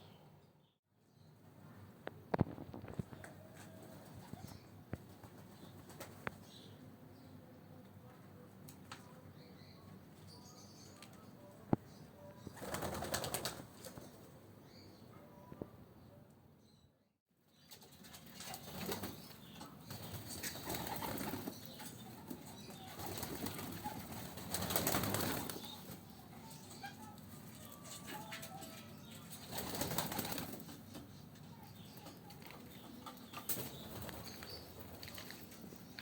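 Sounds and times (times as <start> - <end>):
pigeon wings flapping: 12.6 - 14.1, 18.1 - 19.3, 19.9 - 21.6, 22.8 - 25.8, 29.4 - 30.8.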